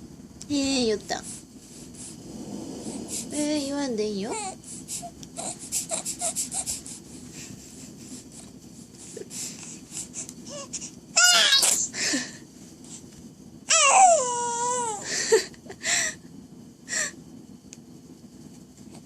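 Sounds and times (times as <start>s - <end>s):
baby snuffly breaths: 4.4s - 11.0s
baby whining: 10.5s - 11.9s, 13.7s - 15.0s
baby squealing: 11.2s - 11.9s.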